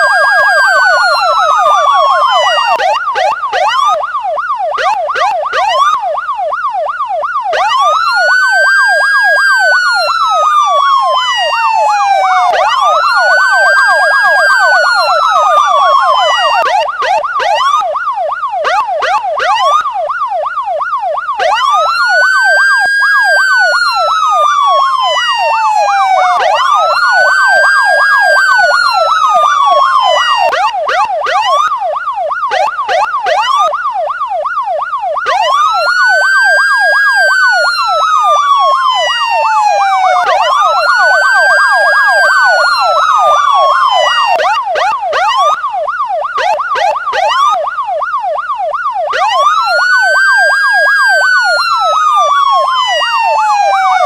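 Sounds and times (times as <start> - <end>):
police siren fast yelp: 0.0 - 54.0
police siren wail: 0.0 - 54.0.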